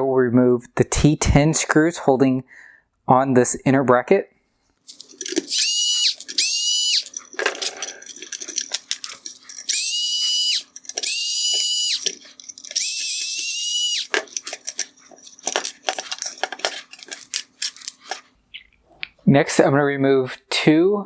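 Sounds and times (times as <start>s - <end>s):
electric screwdriver whining: 4.9s - 16.4s
screws and parts clicking: 4.9s - 18.3s.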